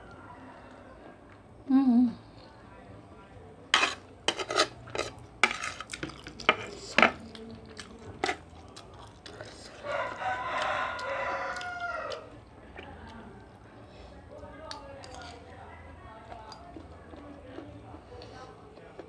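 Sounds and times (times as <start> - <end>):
rooster crowing: 0.0 - 1.2, 9.7 - 12.4
spoon clinking on a plate: 3.8 - 7.2.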